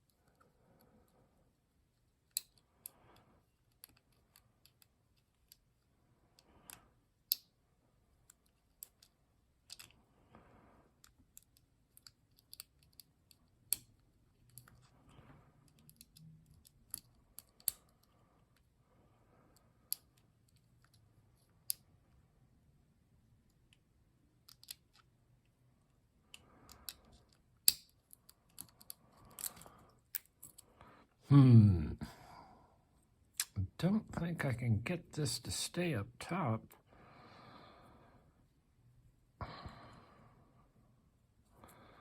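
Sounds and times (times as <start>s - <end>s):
lock pick clicking in lock: 9.7s - 9.9s, 11.0s - 14.8s, 15.7s - 18.0s, 24.4s - 25.0s, 26.7s - 30.6s.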